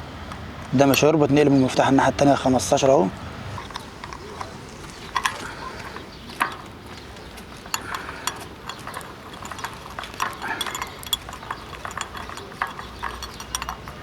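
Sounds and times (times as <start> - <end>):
spanner clicking on metal: 7.4 - 14.0.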